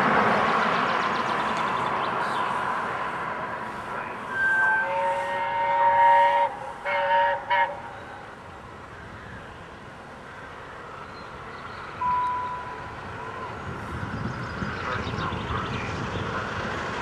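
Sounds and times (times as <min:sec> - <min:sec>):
train running noise: 0:00.0 - 0:17.0
steam locomotive whistle: 0:04.3 - 0:08.0.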